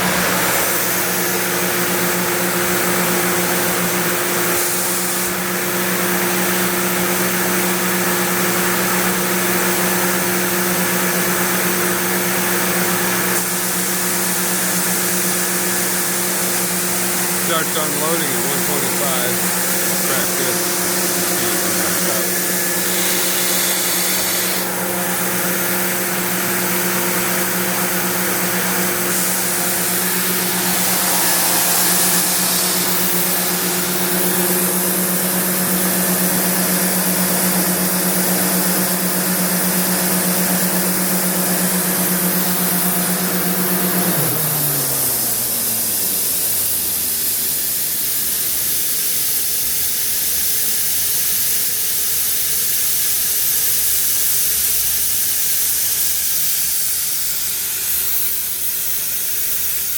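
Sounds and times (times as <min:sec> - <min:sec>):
compressed air hissing: 0:00.0 - 0:05.5, 0:13.4 - 0:39.2
air compressor motor hum: 0:00.0 - 0:59.9.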